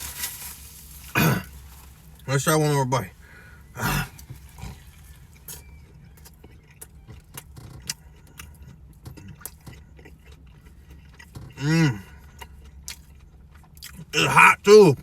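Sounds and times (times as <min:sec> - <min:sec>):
person chewing crispy food: 0:00.0 - 0:02.5, 0:03.2 - 0:15.0
low steady hum: 0:00.0 - 0:15.0.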